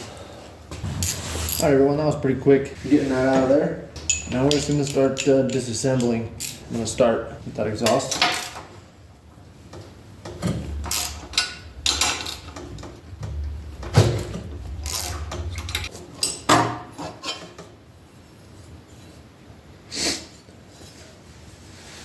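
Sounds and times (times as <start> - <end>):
metal hand tools clanking: 3.2 - 7.0, 10.6 - 17.6.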